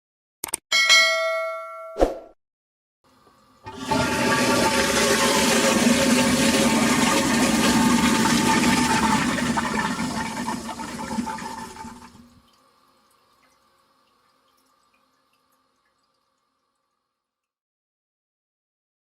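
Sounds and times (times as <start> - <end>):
toilet flushing: 3.1 - 16.1
faint water drips: 12.1 - 17.6.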